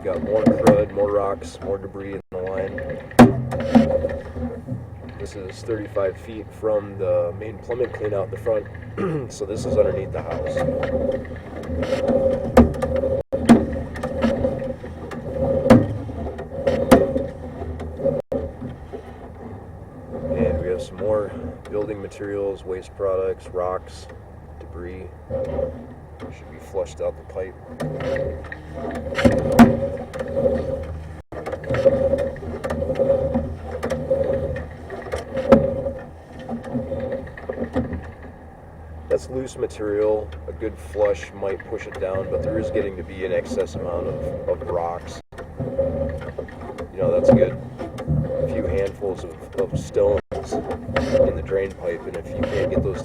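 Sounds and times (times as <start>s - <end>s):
cable scraping and rattling in drain: 0.0s - 53.0s
steady hum: 0.0s - 53.0s
cable knocks and clicks: 7.7s - 19.5s, 27.4s - 38.4s.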